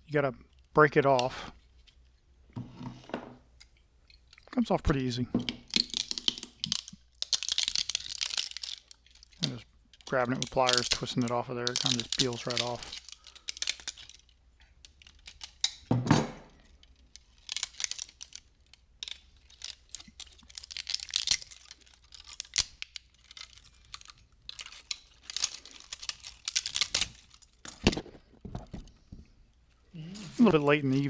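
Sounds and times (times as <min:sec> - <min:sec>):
plastic cracking and clicking: 0:05.4 - 0:15.9, 0:16.6 - 0:29.1.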